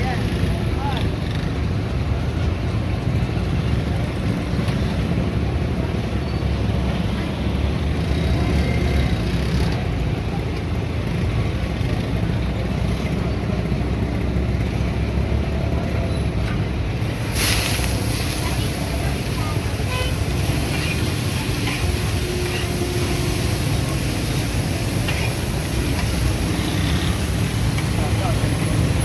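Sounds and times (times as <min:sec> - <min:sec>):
market noise: 0:00.0 - 0:29.0
traffic rumble: 0:00.0 - 0:29.0
brief hiss: 0:17.0 - 0:29.0.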